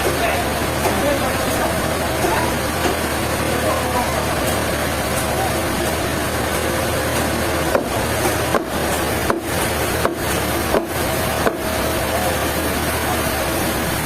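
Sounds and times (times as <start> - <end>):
sawmill machinery running: 0.0 - 14.0
sharp wooden knocks: 7.2 - 11.6.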